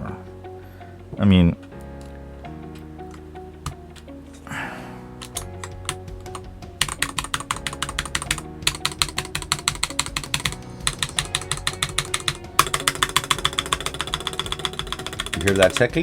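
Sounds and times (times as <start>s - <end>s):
keyboard stabilizer ticking: 5.1s - 16.0s
rapid typing on mechanical keyboard: 5.2s - 16.0s.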